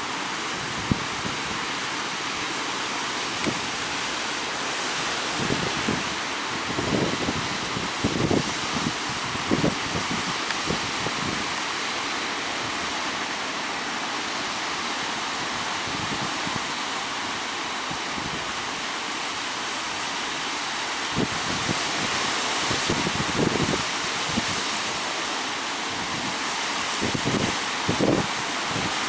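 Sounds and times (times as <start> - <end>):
ocean surf breaking: 0.0 - 29.0
wind buffeting microphone: 0.4 - 1.8, 4.8 - 11.8, 15.2 - 16.8, 21.1 - 24.7, 25.9 - 29.0.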